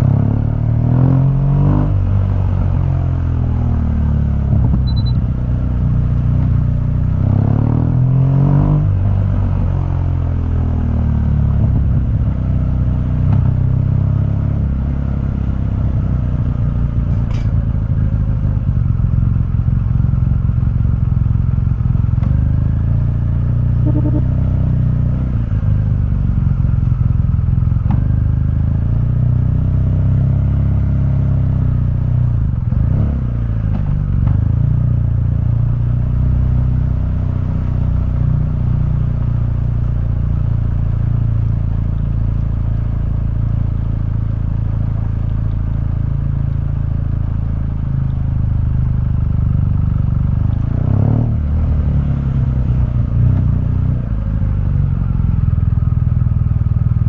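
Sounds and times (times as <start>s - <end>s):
motorcycle engine running: 4.4s - 7.2s, 17.7s - 29.1s.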